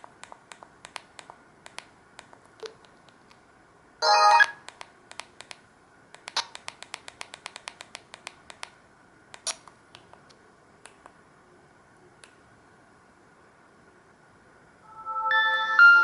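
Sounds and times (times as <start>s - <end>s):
sharp clicks: 0.1s - 3.4s, 4.4s - 11.2s
phone ringtone: 4.0s - 4.6s, 14.9s - 16.0s.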